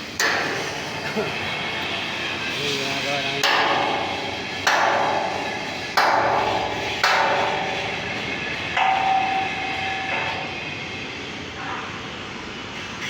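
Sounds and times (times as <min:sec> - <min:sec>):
hammer striking metal: 0:00.2 - 0:01.0, 0:03.4 - 0:11.9
metal ringing: 0:03.4 - 0:11.9.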